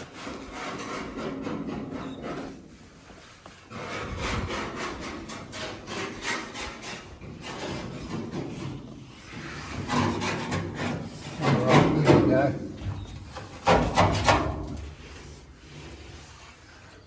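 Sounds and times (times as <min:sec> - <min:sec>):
tool rasping: 0:03.7 - 0:14.5.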